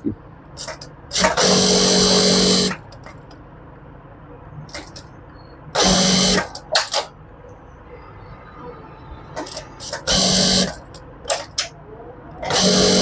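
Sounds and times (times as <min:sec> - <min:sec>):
electric sewing machine running: 0:00.6 - 0:02.8, 0:05.8 - 0:06.5, 0:09.4 - 0:11.4, 0:12.4 - 0:13.0.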